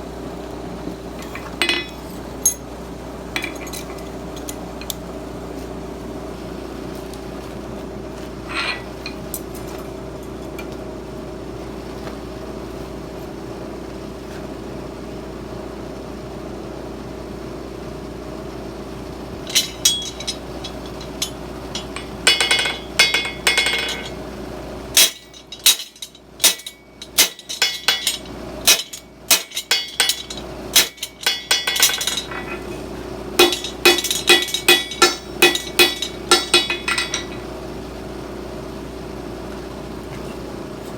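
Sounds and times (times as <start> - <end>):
steady hum: 0.0 - 10.3, 19.1 - 39.9
hammer ringing on steel anvil: 19.5 - 24.2, 25.0 - 32.8, 33.4 - 37.4.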